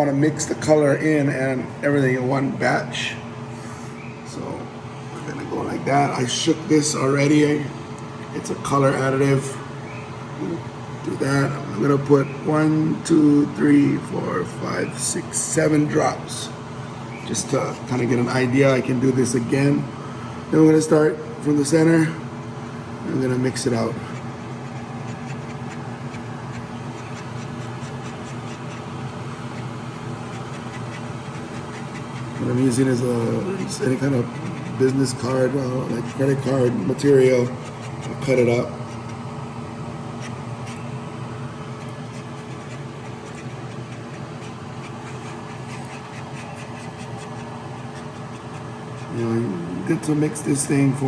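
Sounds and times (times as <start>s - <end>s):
steady low hum: 0.0s - 51.0s
epoxy stirred with plastic card: 23.2s - 39.2s, 40.1s - 49.3s.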